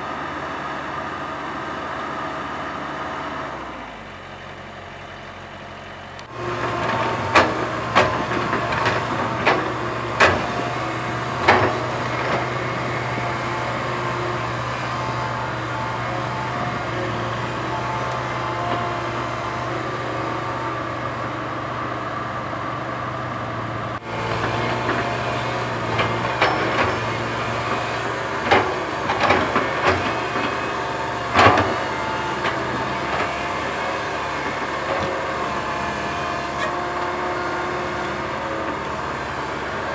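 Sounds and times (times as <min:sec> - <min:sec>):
excavator diesel engine running: 0:00.0 - 0:39.9
metal clanks and knocks: 0:24.3 - 0:33.4.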